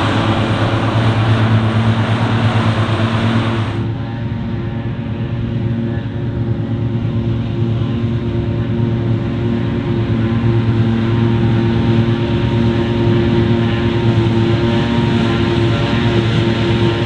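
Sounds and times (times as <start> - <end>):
diesel farm machinery engine drone: 0.0 - 6.7.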